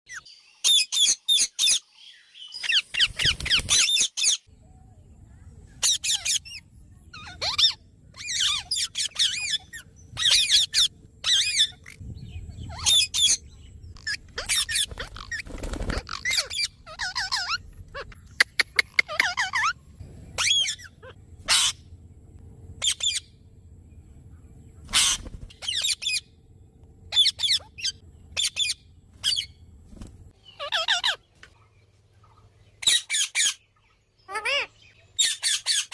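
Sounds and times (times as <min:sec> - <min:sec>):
parrot squawking: 0:05.8 - 0:06.6, 0:07.2 - 0:12.0, 0:14.0 - 0:19.8, 0:20.4 - 0:21.8, 0:24.9 - 0:26.2, 0:27.1 - 0:29.6, 0:30.5 - 0:31.2, 0:32.8 - 0:33.6, 0:34.3 - 0:35.9.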